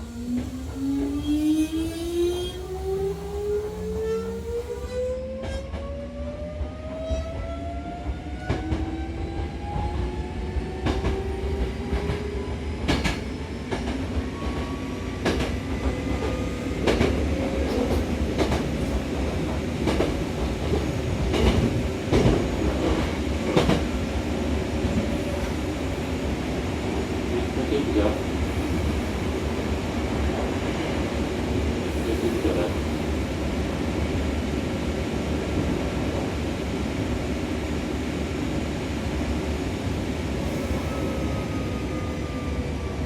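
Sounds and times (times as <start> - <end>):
train wheels click-clacking: 9.8 - 24.0.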